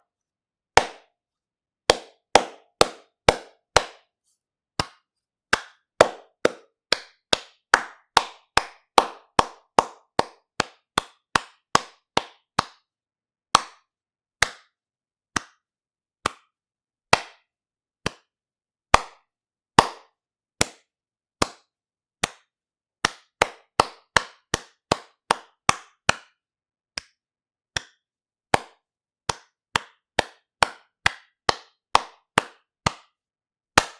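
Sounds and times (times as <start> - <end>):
sharp hand claps: 0.8 - 1.1, 1.9 - 4.1, 4.8 - 12.9, 13.5 - 14.8, 15.4 - 15.6, 16.2 - 16.5, 17.1 - 18.3, 18.9 - 26.4, 27.0 - 27.2, 27.8 - 33.2.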